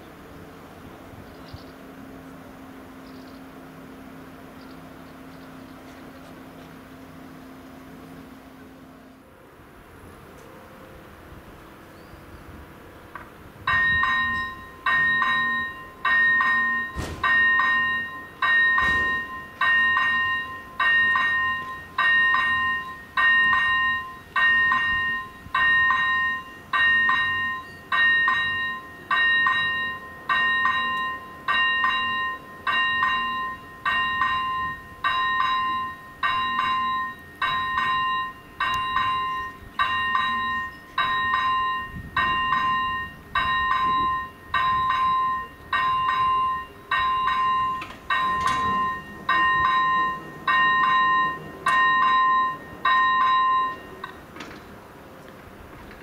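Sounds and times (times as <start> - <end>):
level crossing bell ringing: 13.7 - 54.1.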